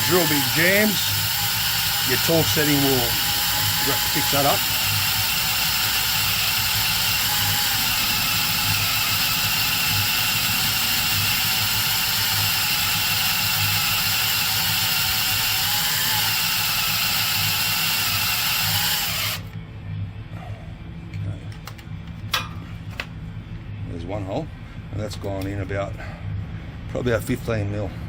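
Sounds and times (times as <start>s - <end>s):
electric drill boring into steel: 0.0s - 19.5s.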